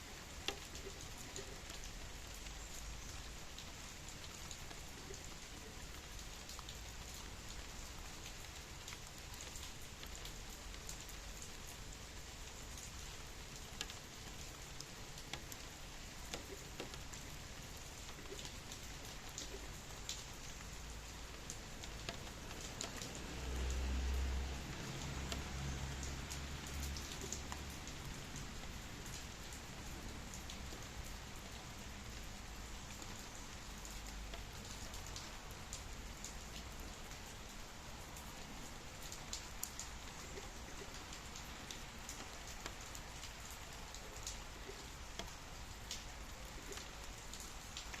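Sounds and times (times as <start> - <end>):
raindrops ticking on a surface: 0.0 - 48.0
steady rain hissing: 0.0 - 48.0.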